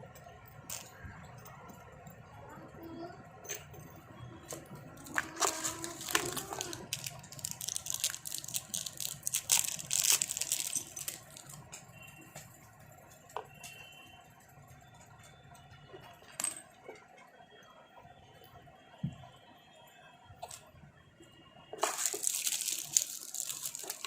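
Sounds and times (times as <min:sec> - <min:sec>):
crinkling handling noise: 0:04.4 - 0:12.6, 0:21.7 - 0:24.0.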